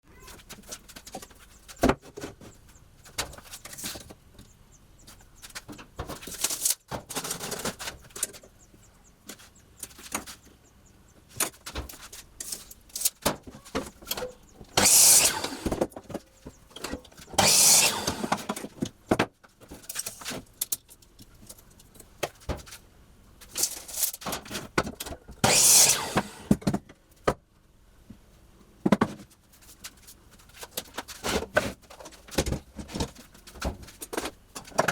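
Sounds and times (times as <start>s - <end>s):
bursts of hiss: 14.8s - 15.8s, 17.4s - 18.5s, 25.4s - 26.6s.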